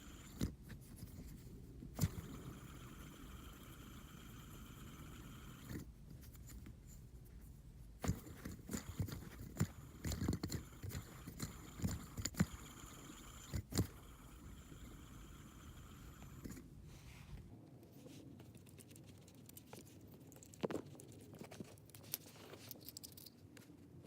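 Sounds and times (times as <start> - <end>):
fidget spinner clicking: 0.0 - 1.2, 1.9 - 6.6, 8.0 - 16.7.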